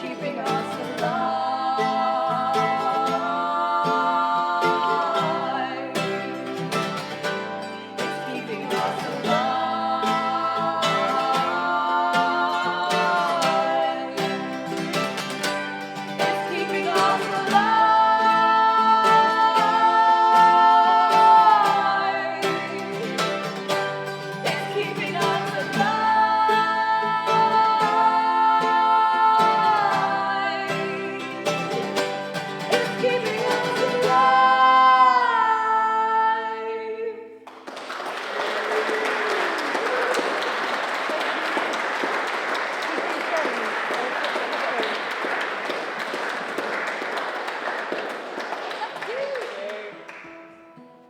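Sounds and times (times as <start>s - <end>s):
two voices singing harmonies: 0.0s - 37.5s
acoustic guitars: 0.0s - 51.0s
audience applauding: 37.4s - 50.8s.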